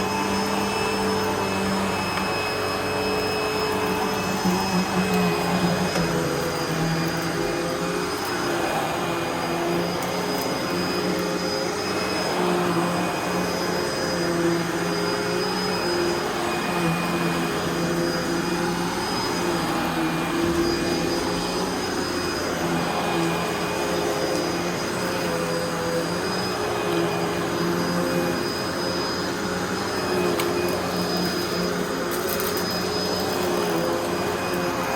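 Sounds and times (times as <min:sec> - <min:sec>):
vacuum cleaner motor whine: 0:00.0 - 0:34.9.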